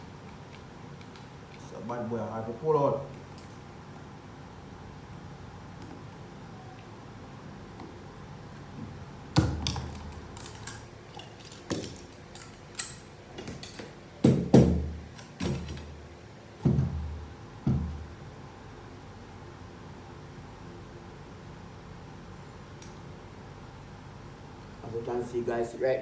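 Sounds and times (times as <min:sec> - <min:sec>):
metal parts knocking and clunking: 0:09.4 - 0:14.4.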